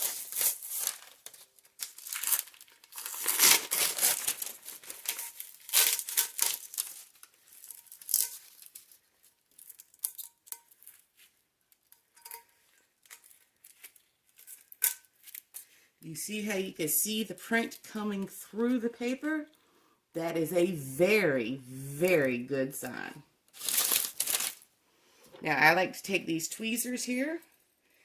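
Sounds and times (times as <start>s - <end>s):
wrapping crinkling and tearing: 0.0s - 11.9s, 12.7s - 15.7s, 23.5s - 24.7s.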